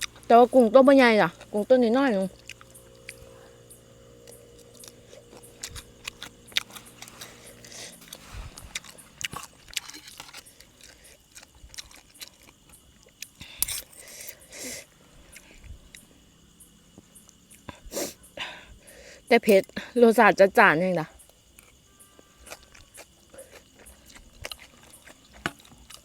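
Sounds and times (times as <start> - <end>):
chewing and crunching salad: 0.0 - 0.7, 2.3 - 16.0, 21.2 - 26.0
steady low hum: 0.0 - 20.0.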